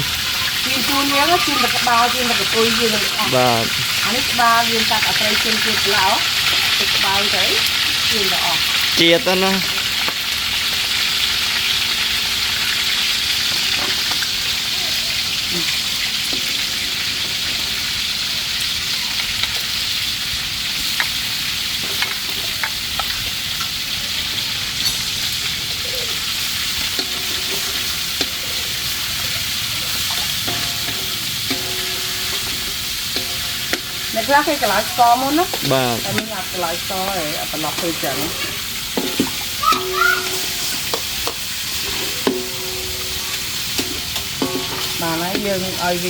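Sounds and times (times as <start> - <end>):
food sizzling in hot oil: 0.0 - 46.0
utensil clicking on pan: 30.0 - 34.9.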